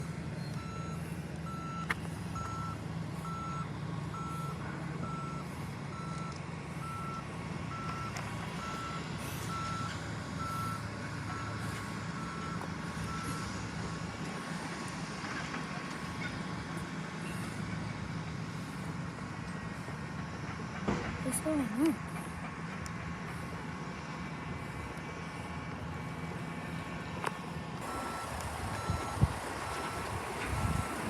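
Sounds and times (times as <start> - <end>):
reversing alarm beeping: 0.0 - 13.7, 27.8 - 31.0
diesel engine running: 0.0 - 31.0.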